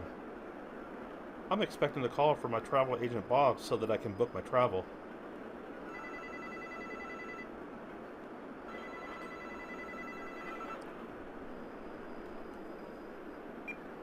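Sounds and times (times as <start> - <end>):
cordless phone ringing: 5.9 - 7.5, 8.7 - 10.8.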